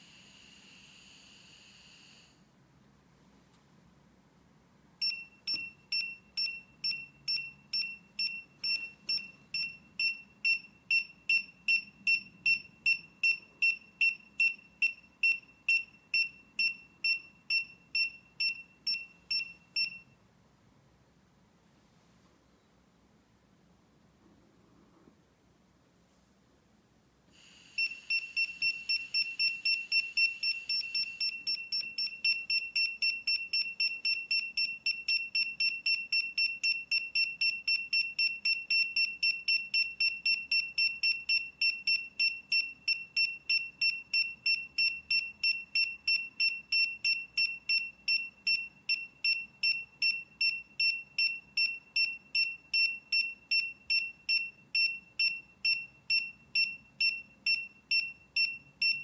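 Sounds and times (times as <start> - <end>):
high-pitched alarm beeping: 0.0 - 2.4, 27.4 - 36.5.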